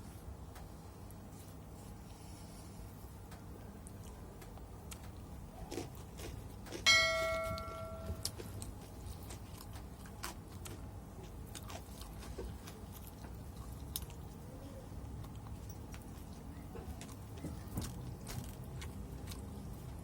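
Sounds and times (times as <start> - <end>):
person chewing food: 0.6 - 20.0
loud ringing clink: 6.9 - 8.3.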